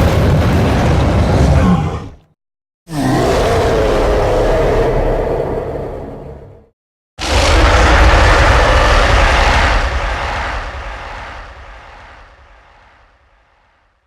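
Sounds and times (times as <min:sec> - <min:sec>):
deep loud ape roar: 0:02.9 - 0:11.3.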